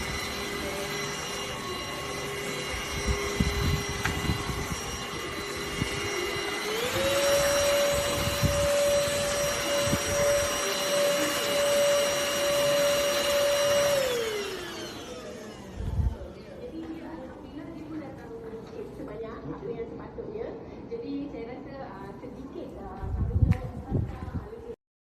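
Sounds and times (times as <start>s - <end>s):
handheld vacuum cleaner whine: 0.0s - 16.6s.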